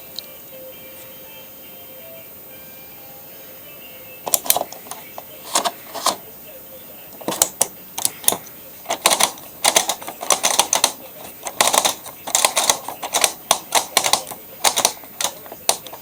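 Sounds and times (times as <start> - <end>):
washing machine clicks and rattles: 4.3 - 6.2, 7.2 - 16.0.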